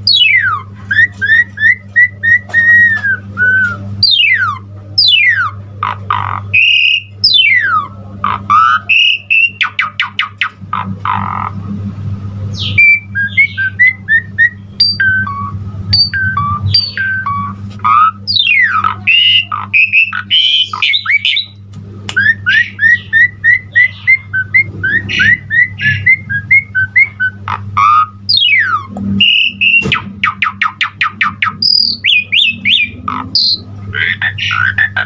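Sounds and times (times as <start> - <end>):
steady low hum: 0.0 - 35.0
starling singing varied song: 12.5 - 35.0.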